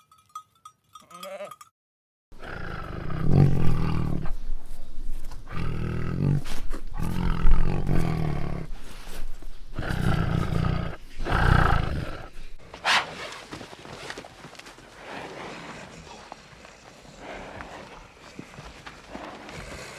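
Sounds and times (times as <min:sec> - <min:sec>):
animal low roaring calls: 0:02.4 - 0:13.1.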